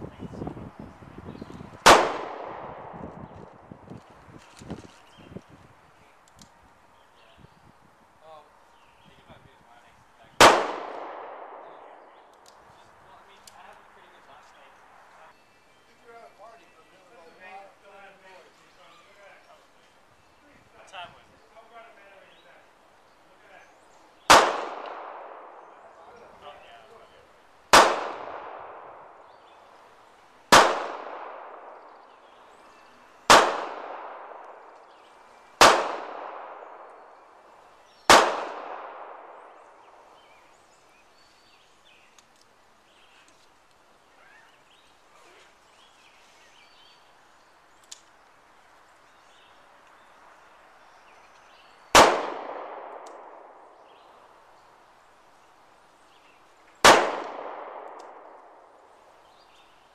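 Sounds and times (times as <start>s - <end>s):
handgun shots with echo: 1.8s - 3.1s, 10.4s - 12.1s, 24.3s - 25.6s, 27.7s - 29.1s, 30.5s - 31.9s, 33.3s - 34.8s, 35.6s - 37.0s, 38.1s - 39.6s, 51.9s - 53.6s, 56.8s - 58.5s.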